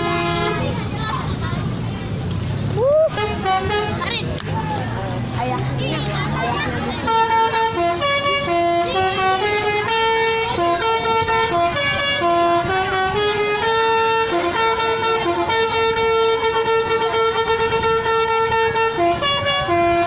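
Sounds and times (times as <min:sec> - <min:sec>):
bus horn playing a tune: 0:00.0 - 0:00.9, 0:03.1 - 0:04.3, 0:06.9 - 0:20.0.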